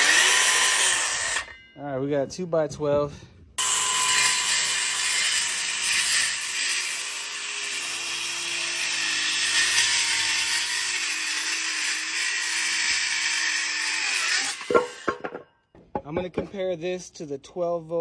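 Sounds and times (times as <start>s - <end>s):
circular saw cutting wood: 0.0s - 1.6s, 3.6s - 15.4s.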